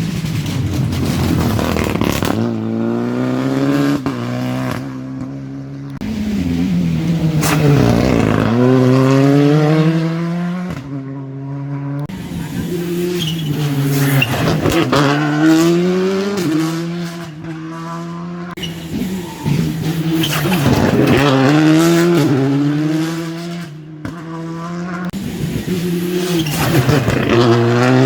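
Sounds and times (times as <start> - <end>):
rally car engines revving: 0.0 - 28.0.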